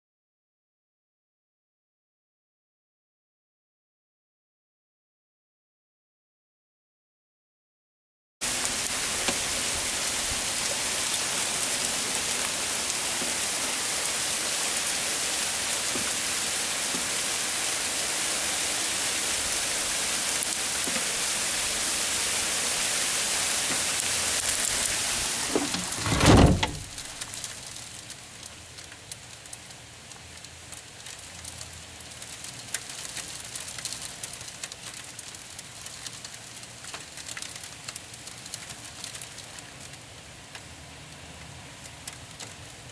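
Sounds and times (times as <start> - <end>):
hail pelting down: 8.4 - 40.6
loud thump: 25.5 - 27.2.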